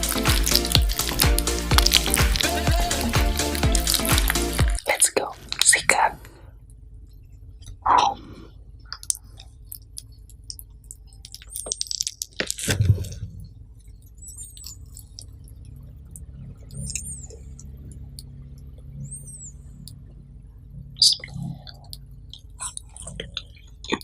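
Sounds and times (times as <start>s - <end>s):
person chewing food: 0.0s - 5.6s, 7.6s - 18.9s, 21.0s - 24.0s
wet mouth clicks: 0.0s - 6.1s, 8.9s - 13.2s, 21.0s - 24.0s.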